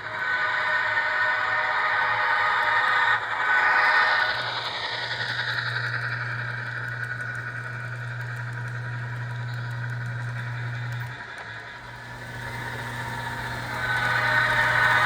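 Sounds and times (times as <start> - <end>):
diesel engine sound from speaker: 11.8 - 15.0.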